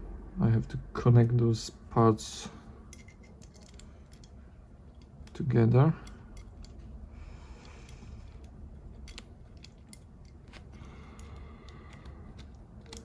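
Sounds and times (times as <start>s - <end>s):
low steady hum: 0.0s - 13.0s
small parts clicking and tapping: 2.9s - 13.0s.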